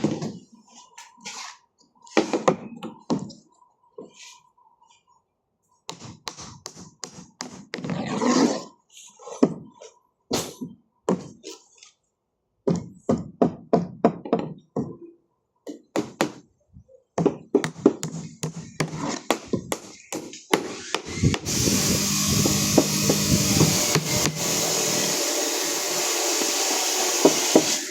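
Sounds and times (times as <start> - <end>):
motor whirring: 20.8 - 27.9.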